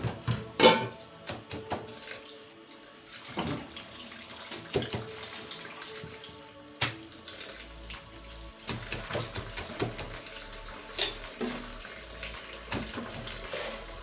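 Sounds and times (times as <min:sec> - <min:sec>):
flatbread sizzling on a hot pan: 0:07.2 - 0:14.0.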